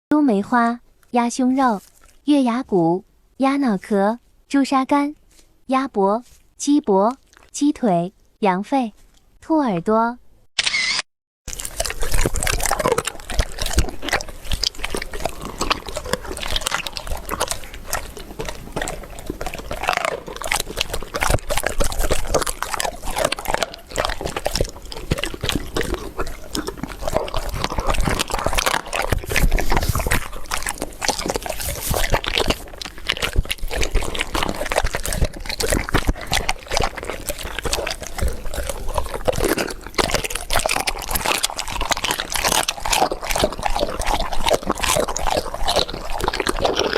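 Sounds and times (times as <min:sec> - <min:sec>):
dogs chewing meat and bone: 0:01.6 - 0:02.2, 0:11.5 - 0:46.9.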